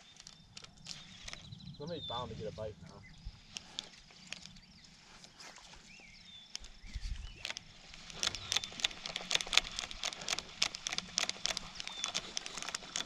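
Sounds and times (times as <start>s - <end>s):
bird chirps: 0.0s - 9.2s, 11.5s - 12.7s
sharp clicks and taps: 6.5s - 13.0s.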